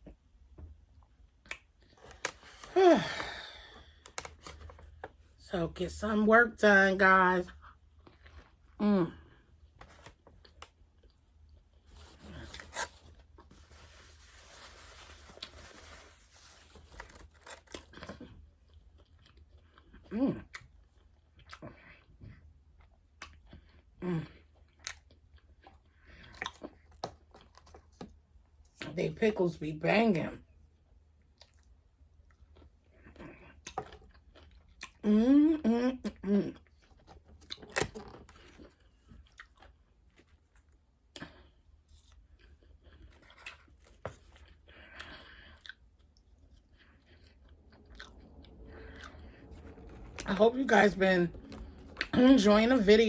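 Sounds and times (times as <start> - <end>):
chewing and crunching food: 7.5 - 29.0, 30.6 - 52.9
steady low hum: 44.7 - 53.0.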